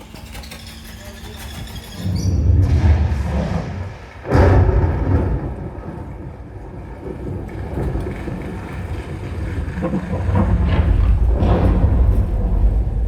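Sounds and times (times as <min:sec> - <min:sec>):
deep rolling thunder rumble: 0:02.0 - 0:13.0
sudden crack: 0:02.3 - 0:06.8, 0:10.2 - 0:13.0.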